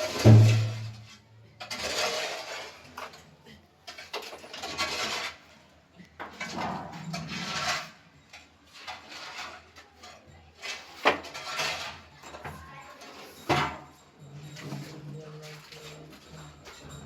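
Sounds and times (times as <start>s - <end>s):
objects scraping and clattering: 0.0s - 17.0s.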